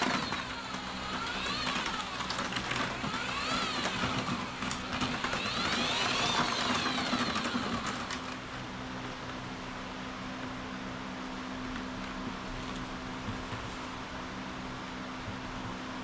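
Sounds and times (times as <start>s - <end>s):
motor speeding up and slowing: 0.0s - 8.5s.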